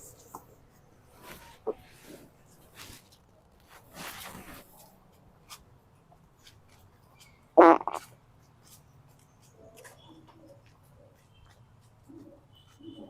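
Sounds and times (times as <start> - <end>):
loud fart: 7.6 - 8.0.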